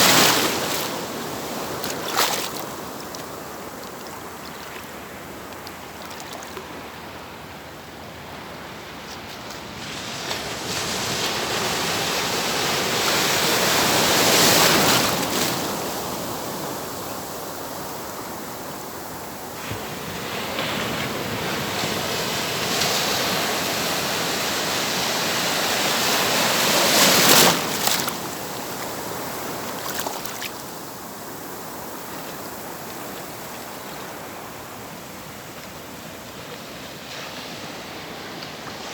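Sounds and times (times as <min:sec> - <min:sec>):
wave crashing: 0:00.0 - 0:06.4, 0:25.4 - 0:31.0
surf washing on shore: 0:00.0 - 0:38.9.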